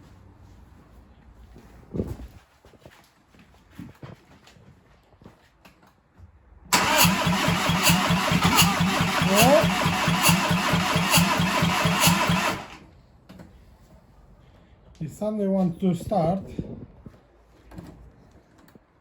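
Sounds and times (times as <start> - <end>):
diesel engine cranking on starter: 6.7 - 12.9.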